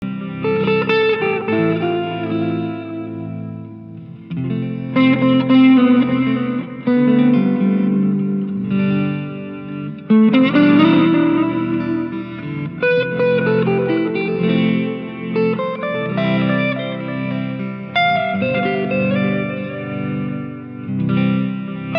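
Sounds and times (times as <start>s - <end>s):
electric guitar chords ringing: 0.0s - 21.9s.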